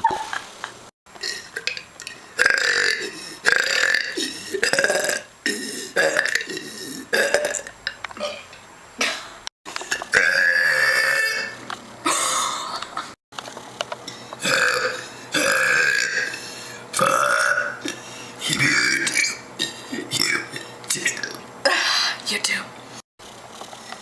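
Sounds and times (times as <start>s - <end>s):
woman burping loudly: 1.2s - 9.3s, 9.9s - 13.1s, 14.4s - 16.4s, 17.0s - 20.6s.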